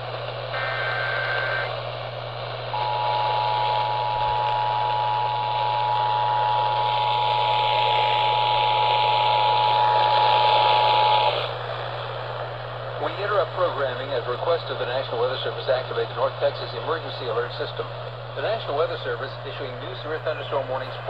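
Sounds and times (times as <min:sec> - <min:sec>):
radio static hiss and hum: 0:00.0 - 0:21.0
buzzing data burst: 0:00.5 - 0:01.8, 0:02.7 - 0:11.5
two-tone attention signal: 0:02.8 - 0:05.3.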